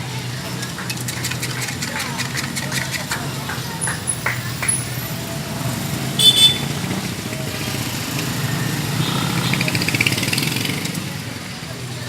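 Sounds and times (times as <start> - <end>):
motorcycle engine running: 0.0 - 12.0
street traffic: 0.0 - 12.0.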